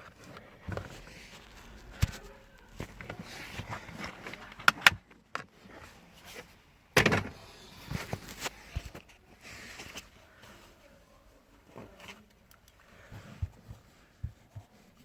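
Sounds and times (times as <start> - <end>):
plastic car parts clicking: 0.0 - 5.6.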